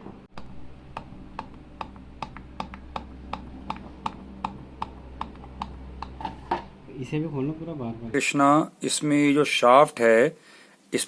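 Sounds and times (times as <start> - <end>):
blower motor humming: 0.0 - 8.2
fan ticking against housing: 0.4 - 6.2.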